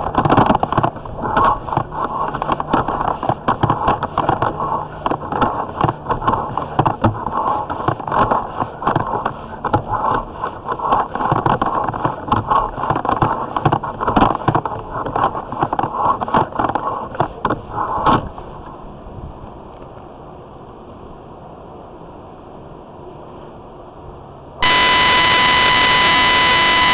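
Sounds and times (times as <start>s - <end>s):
camera cable scraping in drain: 0.0s - 18.4s.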